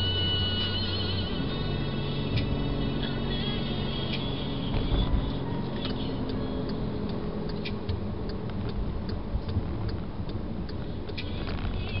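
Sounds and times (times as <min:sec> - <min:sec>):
low road rumble: 0:00.0 - 0:12.0
faint light ticks: 0:05.8 - 0:12.0.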